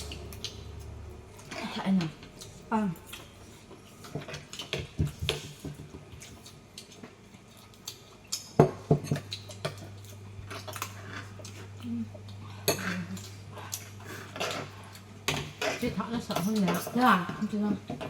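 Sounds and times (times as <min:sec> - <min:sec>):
utensils clinking against dishes: 0:12.6 - 0:18.0.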